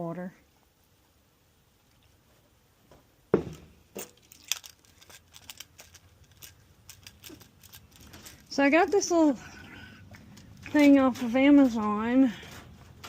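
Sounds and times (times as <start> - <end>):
sharp knocks: 3.3 - 3.7
small clicks and rustles: 3.9 - 9.3.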